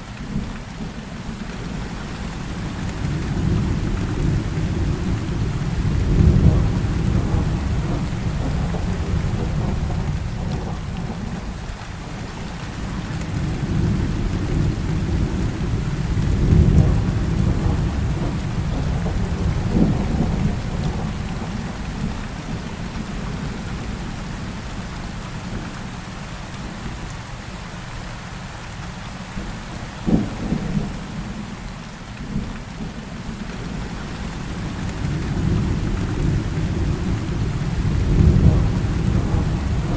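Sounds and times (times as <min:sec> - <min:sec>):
heavy rain falling: 0:00.0 - 0:39.9
rolling thunder: 0:02.6 - 0:11.6, 0:12.8 - 0:24.0, 0:33.6 - 0:39.9.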